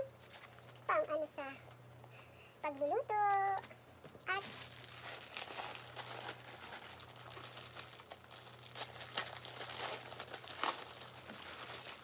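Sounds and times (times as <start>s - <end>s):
plastic packaging crinkling: 4.3s - 12.0s.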